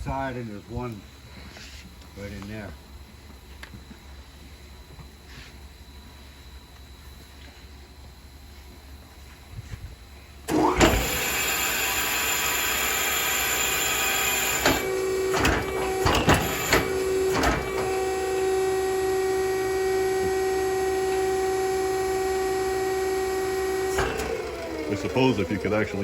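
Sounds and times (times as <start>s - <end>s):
machine humming: 10.2s - 26.0s
sharp knocks and clicks: 14.6s - 17.9s.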